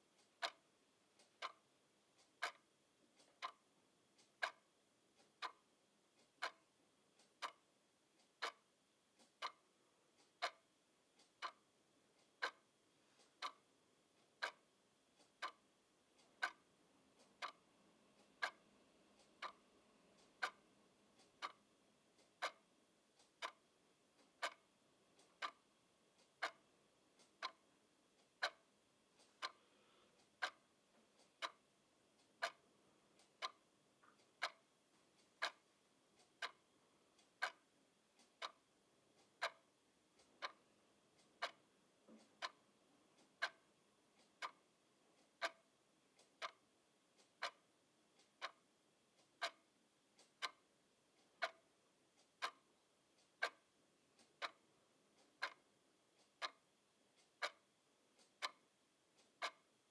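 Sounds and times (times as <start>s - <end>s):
clock ticking: 0.0s - 59.9s.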